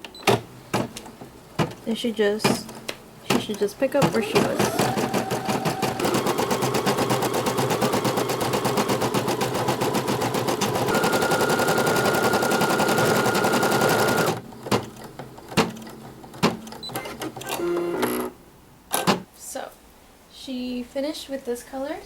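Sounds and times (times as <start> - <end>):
embroidery machine stitching: 3.3 - 14.8.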